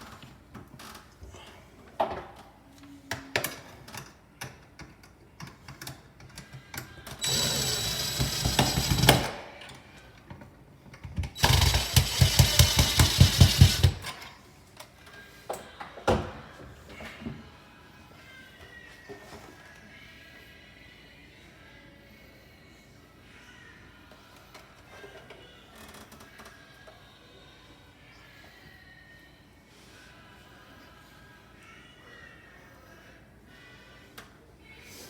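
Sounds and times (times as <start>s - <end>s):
cordless power driver running: 7.2s - 9.3s, 11.4s - 14.1s.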